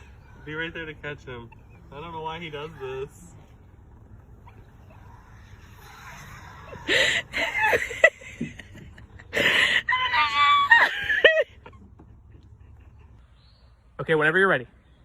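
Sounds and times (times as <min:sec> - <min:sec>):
child squealing: 0:04.4 - 0:07.9, 0:09.9 - 0:11.0.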